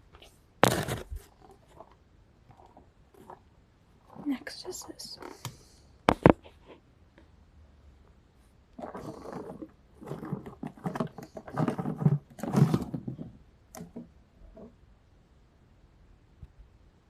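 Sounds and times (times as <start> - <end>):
fidget toys rustling and clattering: 0.1 - 6.8, 8.8 - 14.8.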